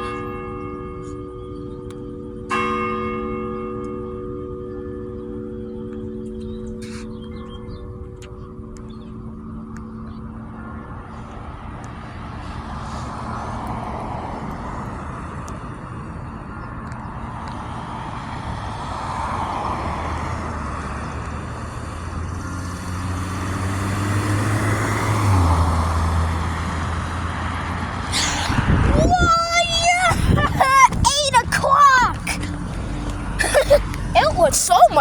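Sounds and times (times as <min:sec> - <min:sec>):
church bell hum: 0:00.0 - 0:12.8
car passing by: 0:12.0 - 0:15.4, 0:17.6 - 0:28.9.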